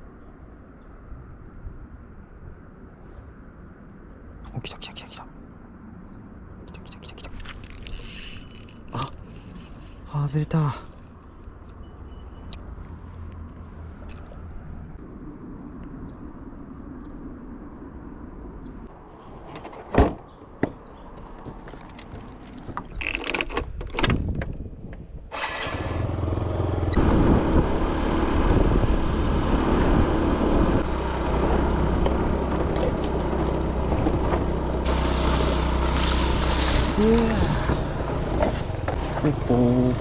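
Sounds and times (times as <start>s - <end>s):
wind: 0.0s - 40.0s
outboard motor running: 25.7s - 40.0s
water noise: 34.4s - 40.0s.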